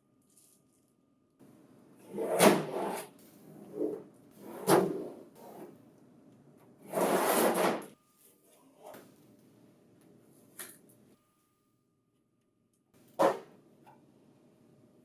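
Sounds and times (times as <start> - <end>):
plastic cover sliding scrape: 2.1 - 5.8, 6.8 - 7.9.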